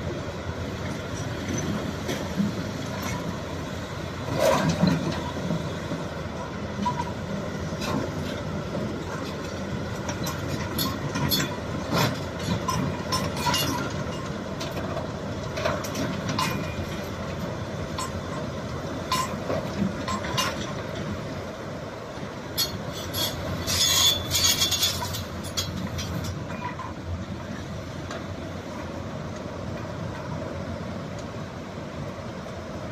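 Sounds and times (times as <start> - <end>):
excavator working: 0.0 - 32.9
metallic clanks and knocks: 9.1 - 17.2, 17.9 - 21.1, 22.6 - 27.0
high metallic squeal: 22.6 - 25.7.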